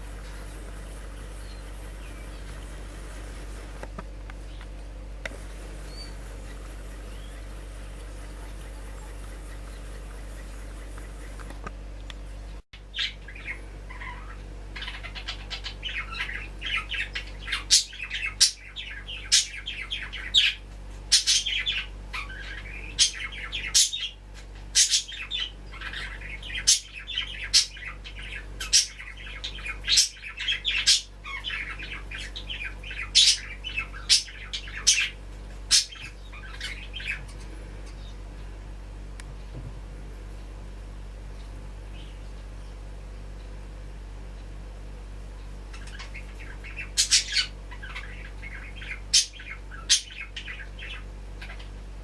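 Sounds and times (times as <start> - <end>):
birds chattering and squawking: 0.0 - 52.0.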